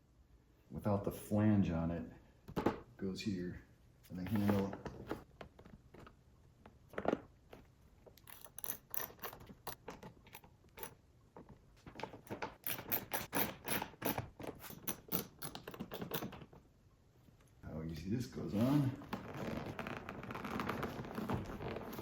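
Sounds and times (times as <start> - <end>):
hand tool clicking on screw: 8.2 - 11.0, 12.6 - 16.4.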